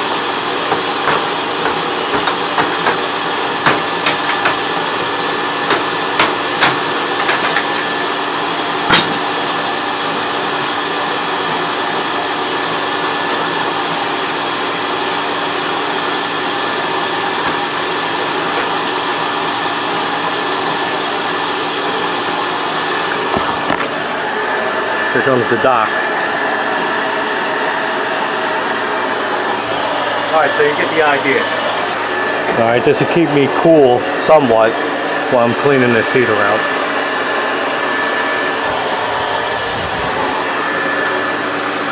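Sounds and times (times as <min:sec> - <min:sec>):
vacuum and fan whirring: 0:00.0 - 0:41.9
sharp knocks: 0:08.9 - 0:09.3.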